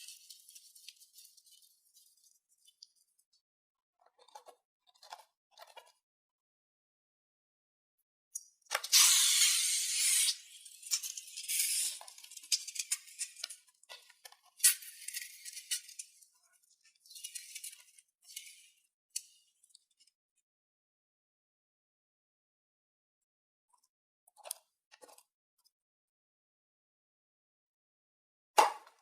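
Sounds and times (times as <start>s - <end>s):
rustling and rattling materials: 0.0s - 3.4s.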